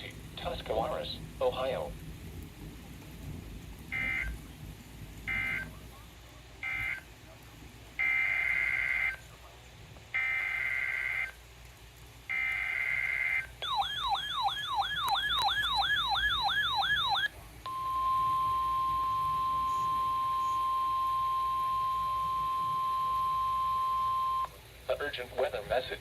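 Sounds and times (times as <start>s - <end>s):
steady warning tone: 0.0s - 7.4s, 8.0s - 9.4s, 10.1s - 11.4s, 12.3s - 24.6s
raspy data bursts: 0.0s - 9.5s, 10.1s - 11.5s, 12.3s - 26.0s
warbling alarm siren: 2.6s - 5.9s, 6.6s - 7.2s, 8.0s - 9.3s, 10.1s - 11.4s, 12.3s - 24.6s.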